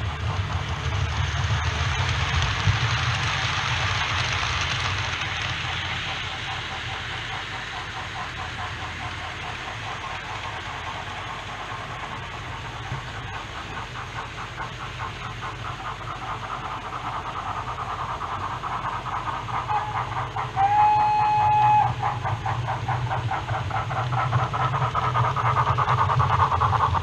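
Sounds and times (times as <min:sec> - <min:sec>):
model steam locomotive chuffing: 0:00.0 - 0:27.0
model train rumbling over track: 0:00.0 - 0:27.0.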